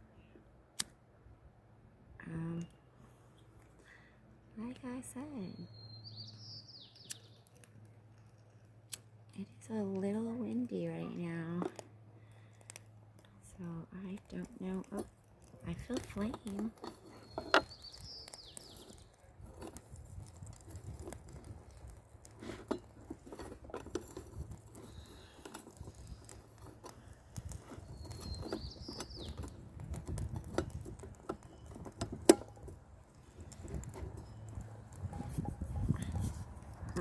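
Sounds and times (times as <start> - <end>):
bird chirping: 5.4 - 7.6, 16.1 - 19.3, 27.7 - 29.6
small clicks and taps: 7.0 - 37.0
wind buffeting microphone: 17.3 - 22.2, 24.2 - 37.0.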